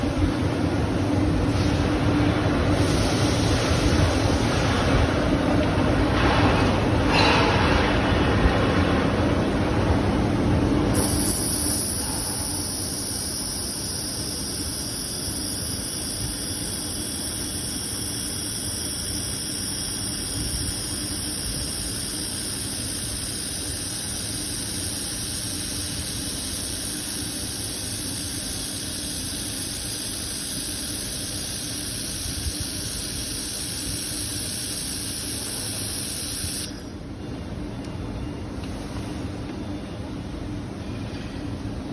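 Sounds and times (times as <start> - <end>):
low machine hum: 0.0 - 41.9
laser welder whining: 11.0 - 37.0.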